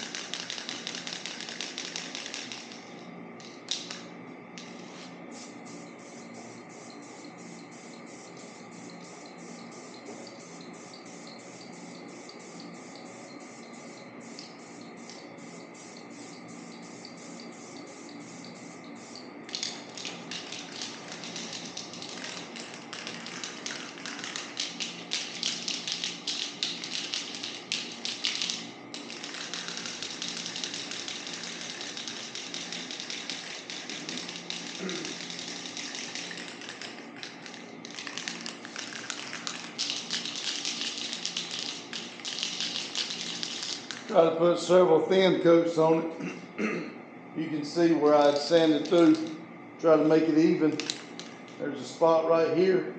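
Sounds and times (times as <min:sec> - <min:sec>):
spray can mixing ball clicking: 0:00.0 - 0:02.8, 0:03.4 - 0:04.0, 0:19.5 - 0:44.2, 0:48.4 - 0:49.4, 0:50.7 - 0:51.4
spray paint hissing: 0:00.0 - 0:03.0, 0:04.6 - 0:44.2.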